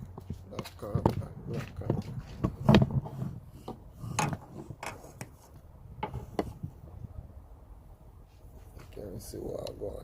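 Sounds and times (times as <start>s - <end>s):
scraping rubs: 0.2s - 6.8s.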